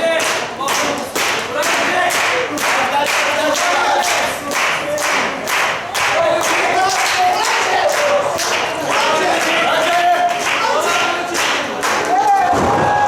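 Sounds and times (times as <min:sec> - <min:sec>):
crowd clapping in rhythm: 0:00.0 - 0:12.5.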